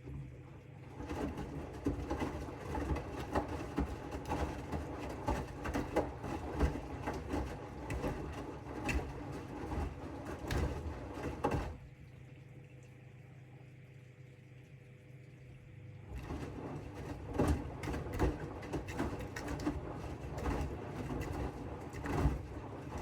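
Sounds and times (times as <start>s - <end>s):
washing machine tumbling: 0.0s - 12.0s, 15.5s - 23.0s
low steady hum: 11.8s - 17.9s.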